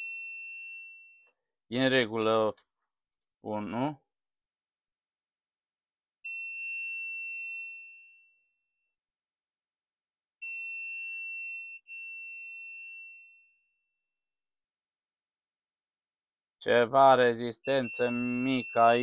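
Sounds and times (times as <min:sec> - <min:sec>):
multimeter continuity beep: 0:17.6 - 0:19.0.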